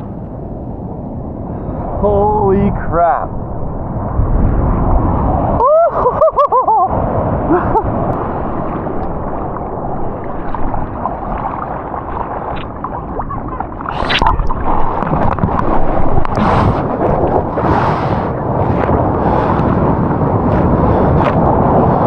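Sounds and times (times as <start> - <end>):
churning surf: 0.0 - 22.0
breaking water rush: 7.5 - 22.0
bubbling gurgles underwater: 8.1 - 18.3.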